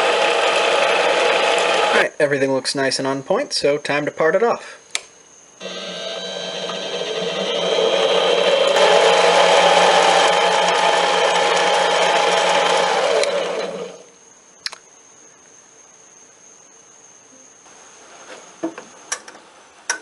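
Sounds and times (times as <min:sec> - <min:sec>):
lathe motor hum: 0:00.0 - 0:02.0, 0:05.6 - 0:14.1
squealing cutting tool: 0:00.0 - 0:02.0, 0:05.6 - 0:14.1.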